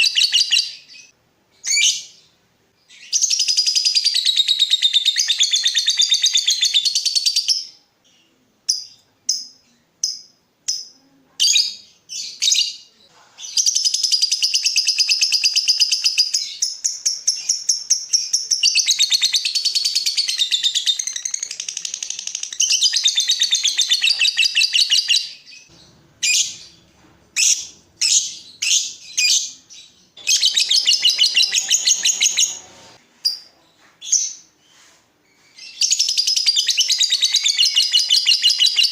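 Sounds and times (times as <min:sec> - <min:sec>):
bird chattering trills: 0:30.2 - 0:33.0.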